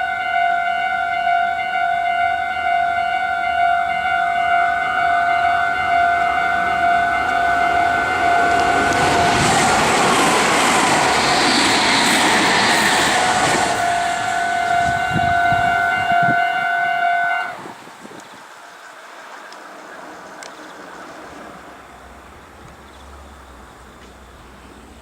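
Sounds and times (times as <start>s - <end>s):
level-crossing alarm: 0.0s - 17.7s
electric train passing: 0.0s - 25.0s.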